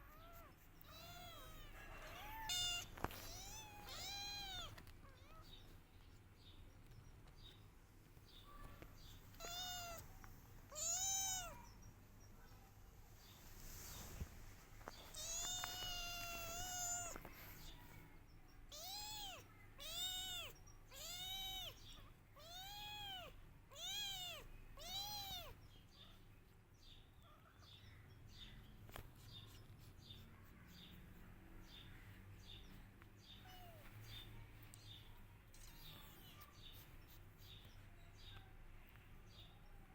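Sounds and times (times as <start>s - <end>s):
kitten meowing: 0.0s - 5.5s, 9.3s - 11.7s, 14.9s - 17.6s, 18.7s - 21.8s, 22.4s - 25.6s, 33.5s - 33.9s.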